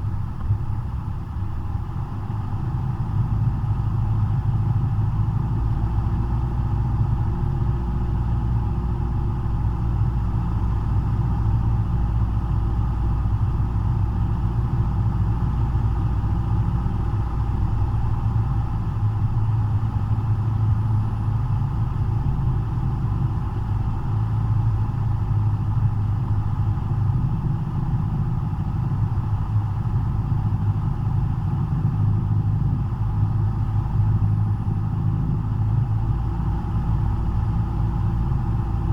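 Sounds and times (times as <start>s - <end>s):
propeller aircraft engine droning: 18.8s - 38.9s.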